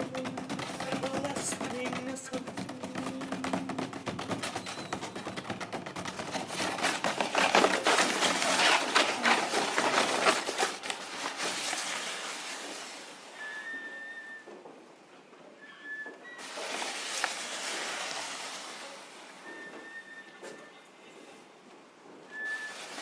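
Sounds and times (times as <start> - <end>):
dense clicking and scratching: 0.0 - 13.1.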